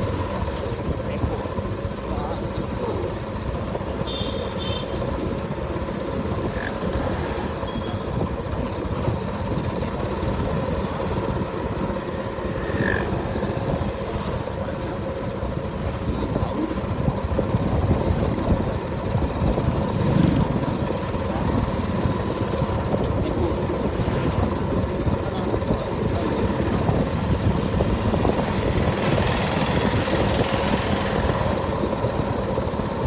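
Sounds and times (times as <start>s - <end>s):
motorcycle engine: 0.0s - 33.0s
traffic: 0.0s - 33.0s
wind rumble: 15.6s - 33.0s.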